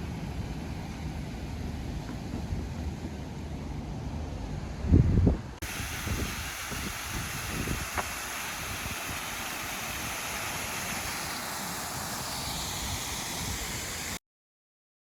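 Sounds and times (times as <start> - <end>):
wind buffeting microphone: 4.8 - 9.3.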